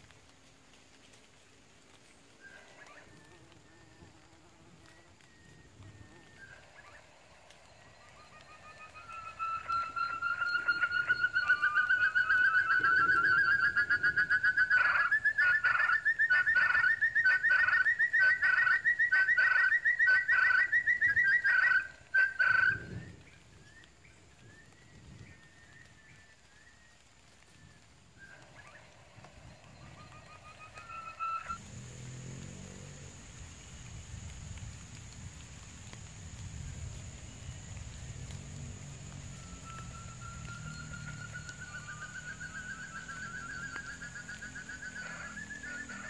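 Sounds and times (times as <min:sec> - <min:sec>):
quail trill rising: 0:04.8 - 0:23.0, 0:28.2 - 0:31.7, 0:38.9 - 0:46.0.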